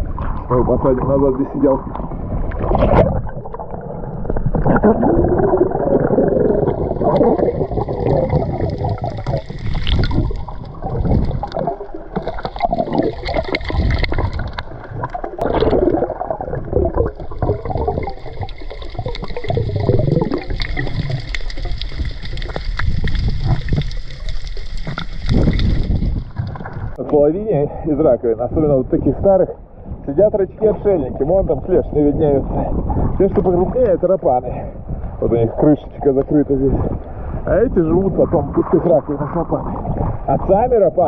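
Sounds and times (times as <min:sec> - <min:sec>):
sea water sloshing in shallows: 0:00.0 - 0:27.0.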